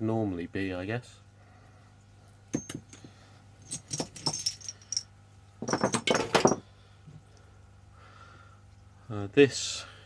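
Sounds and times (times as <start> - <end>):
metal hand tools clinking: 2.6 - 6.6.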